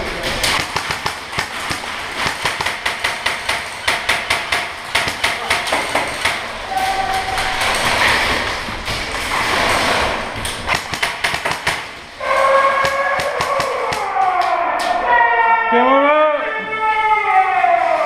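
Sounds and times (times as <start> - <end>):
airsoft guns firing: 0.0 - 6.6, 10.6 - 14.1.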